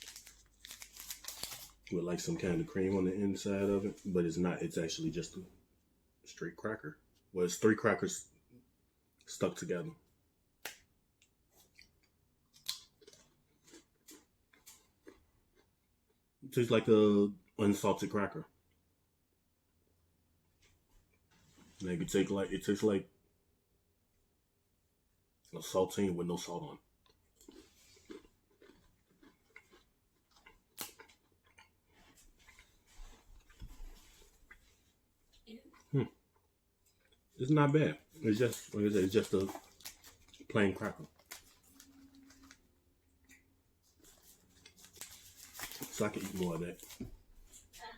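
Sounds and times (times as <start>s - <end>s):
cracker crunching: 0.0s - 2.0s, 10.6s - 16.2s, 27.0s - 34.6s, 38.2s - 47.1s
chewing cracker: 11.6s - 16.2s, 27.0s - 32.7s.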